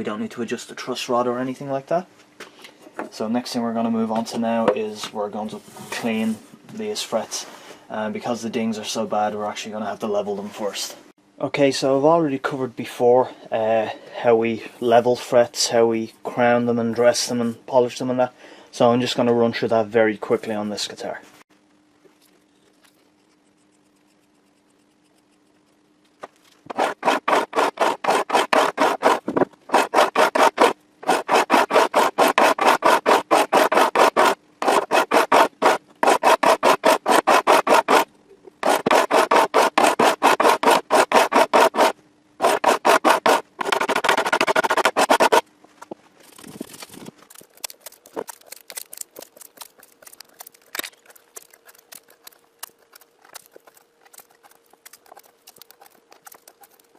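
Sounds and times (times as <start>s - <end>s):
file scraping guitar frets: 26.7s - 45.4s.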